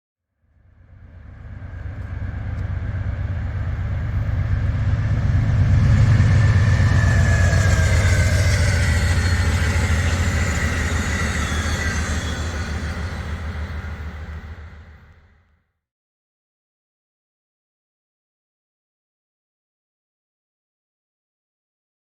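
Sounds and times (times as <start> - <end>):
model train rolling on track: 1.0 - 15.4.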